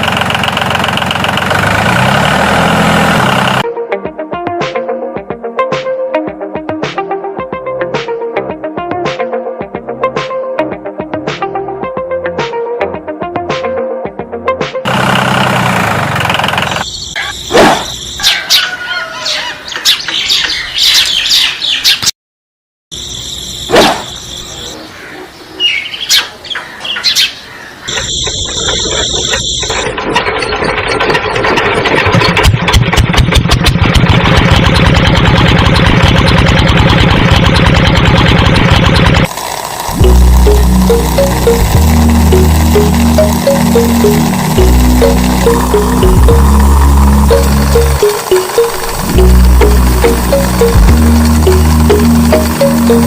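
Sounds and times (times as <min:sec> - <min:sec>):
motor fast even rattle: 0:00.0 - 0:03.6, 0:14.9 - 0:16.8, 0:27.9 - 0:53.0
small electric motors running: 0:14.9 - 0:16.8, 0:34.3 - 0:53.0
short squeals and clatter: 0:27.9 - 0:39.2.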